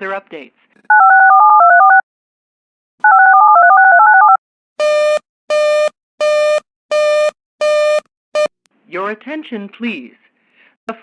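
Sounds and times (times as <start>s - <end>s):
buzzy beep: 4.8s - 8.5s.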